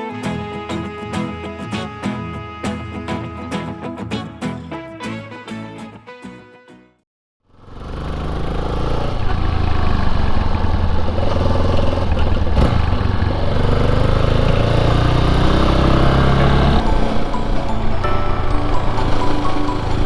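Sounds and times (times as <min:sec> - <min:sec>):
motorcycle engine running: 0:07.5 - 0:20.0.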